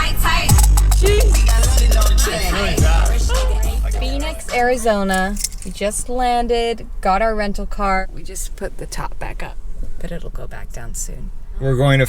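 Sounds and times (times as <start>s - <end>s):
upbeat music with percussion: 0.5s - 4.5s.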